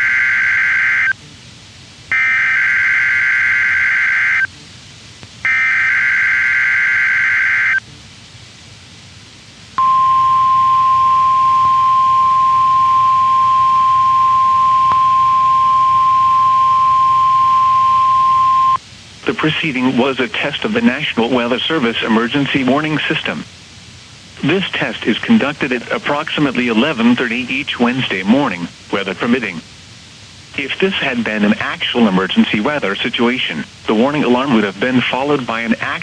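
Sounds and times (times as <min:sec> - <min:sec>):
steady warning alarm tone: 0:09.8 - 0:18.8.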